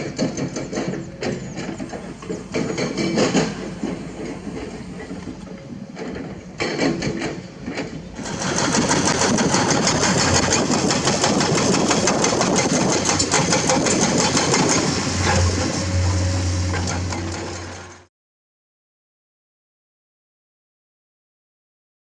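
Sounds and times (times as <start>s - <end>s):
diesel engine running: 0.3s - 6.6s, 8.0s - 18.1s.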